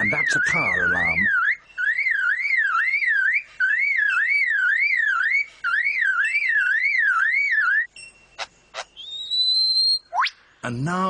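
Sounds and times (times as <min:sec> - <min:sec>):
lyrebird mimicking car alarm: 0:00.0 - 0:07.9.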